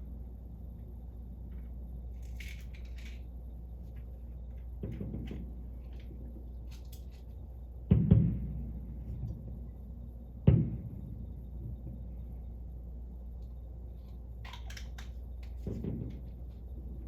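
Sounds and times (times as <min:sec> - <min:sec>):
loud firework boom: 0:07.9 - 0:09.0, 0:10.4 - 0:12.0
dull firework thump: 0:07.9 - 0:09.3, 0:10.4 - 0:11.1.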